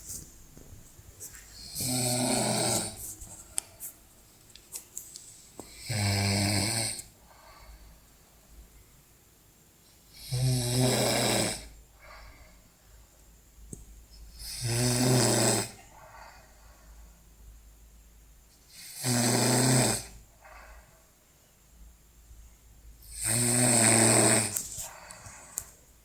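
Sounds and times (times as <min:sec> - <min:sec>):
person snoring: 0:01.6 - 0:03.0, 0:10.2 - 0:11.7, 0:14.4 - 0:15.8, 0:23.1 - 0:25.2
soft breath: 0:07.2 - 0:08.1, 0:12.0 - 0:13.1, 0:15.8 - 0:17.3, 0:20.4 - 0:21.2, 0:24.6 - 0:25.9.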